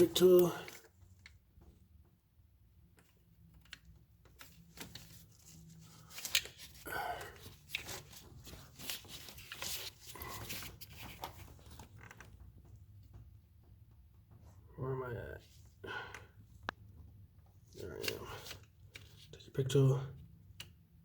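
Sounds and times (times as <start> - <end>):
rustling scrape: 7.6 - 11.8.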